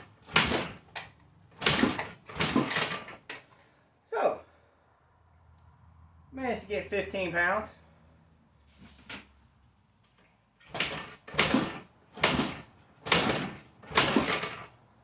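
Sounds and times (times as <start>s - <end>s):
engine kickstarter strokes: 10.6s - 14.7s.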